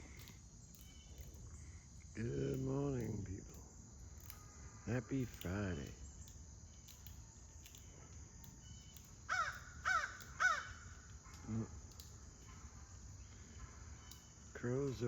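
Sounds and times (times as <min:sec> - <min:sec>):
crow cawing: 0:04.2 - 0:05.6, 0:09.2 - 0:11.5.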